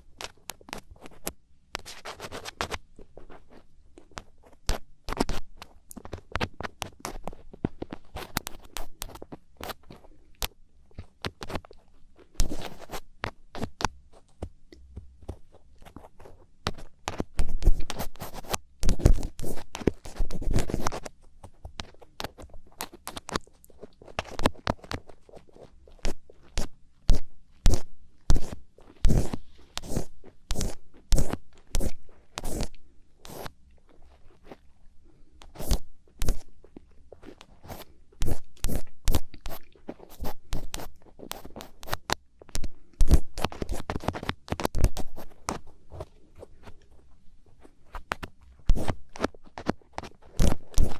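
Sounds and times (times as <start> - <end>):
ear pick scraping inside ear: 12.4 - 13.8, 26.0 - 34.6, 35.4 - 36.6, 37.2 - 46.8, 47.9 - 50.9.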